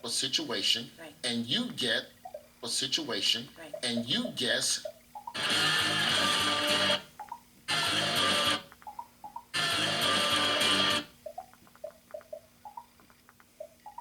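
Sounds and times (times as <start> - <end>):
strummed guitar chords: 7.7 - 8.6, 9.6 - 11.1.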